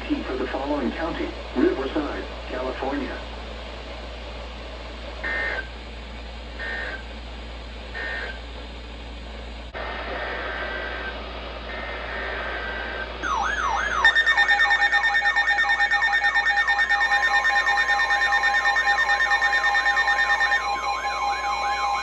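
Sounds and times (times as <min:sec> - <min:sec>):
alert tone sweeping down: 0:13.2 - 0:22.0
steady high tone: 0:13.2 - 0:22.0
two-pitch screeching data bursts: 0:13.2 - 0:22.0.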